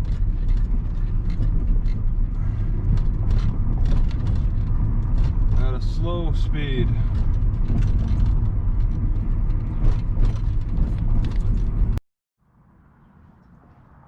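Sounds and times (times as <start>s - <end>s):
knocks and rattles: 0.0s - 6.1s, 6.9s - 12.0s
car road rumble: 0.0s - 14.0s.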